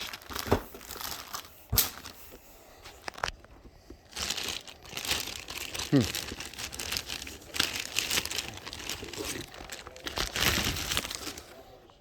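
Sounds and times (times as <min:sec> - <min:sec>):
packaging crinkling: 0:00.0 - 0:11.9.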